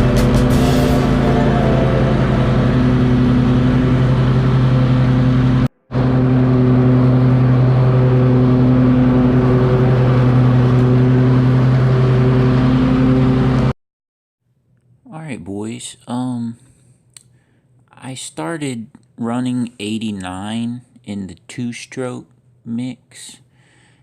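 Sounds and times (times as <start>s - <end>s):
riding mower engine running: 0.0s - 13.7s.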